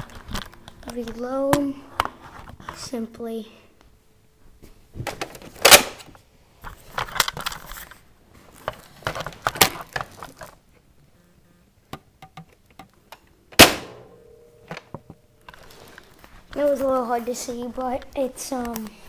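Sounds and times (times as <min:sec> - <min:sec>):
loud snap: 0:13.5 - 0:15.2.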